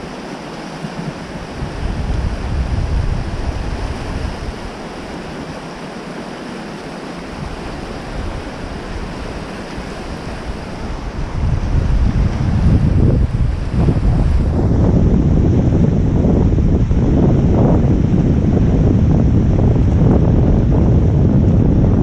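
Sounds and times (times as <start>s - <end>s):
rushing river whitewater: 0.0s - 15.0s
wind buffeting microphone: 0.0s - 22.0s.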